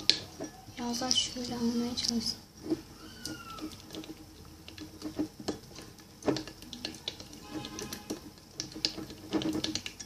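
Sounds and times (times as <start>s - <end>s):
plastic spoon stirring slime: 0.0s - 10.0s.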